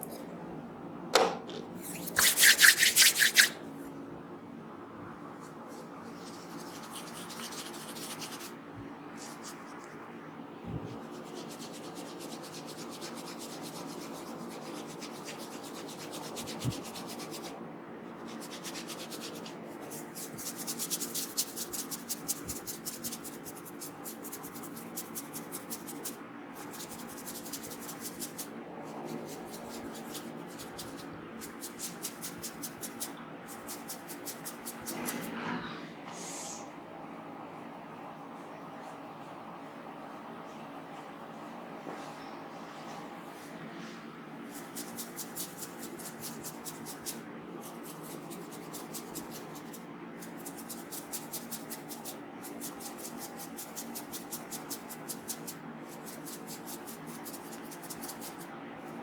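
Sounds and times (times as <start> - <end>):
hands rubbing hair and scalp: 1.8 - 3.6, 5.4 - 8.6, 9.2 - 10.1, 10.9 - 17.5, 18.2 - 35.2, 44.5 - 58.4.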